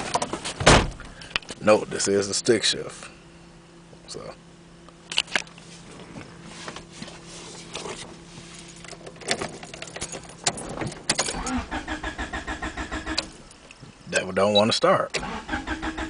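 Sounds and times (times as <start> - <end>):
car starter cranking engine: 9.3 - 13.4, 15.1 - 16.0.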